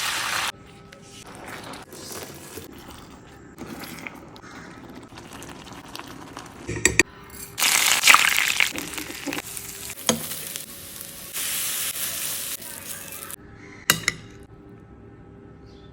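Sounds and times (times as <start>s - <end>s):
food sizzling in a hot pan: 0.0s - 0.5s, 7.6s - 13.4s
utensil knocking against pan: 13.9s - 14.4s.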